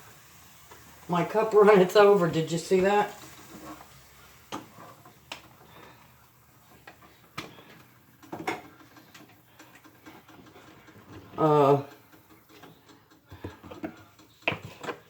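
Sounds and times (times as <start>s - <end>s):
kitchen utensils knocking and clicking: 6.7s - 15.0s.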